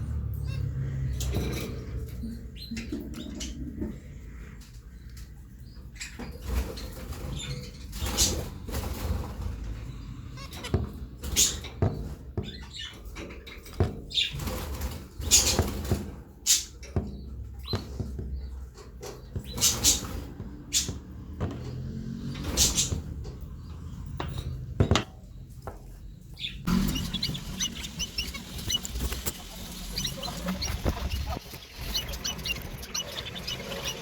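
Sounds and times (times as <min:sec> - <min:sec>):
small knocks and rustles in cage: 0:01.1 - 0:34.0
birds wing flaps: 0:26.7 - 0:34.0.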